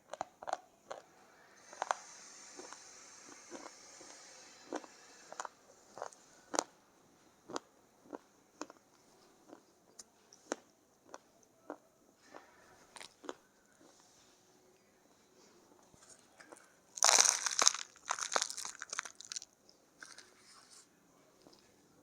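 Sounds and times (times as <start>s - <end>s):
clay crunching between teeth: 0.0s - 1.1s, 1.7s - 6.7s, 7.4s - 14.0s, 16.4s - 20.3s.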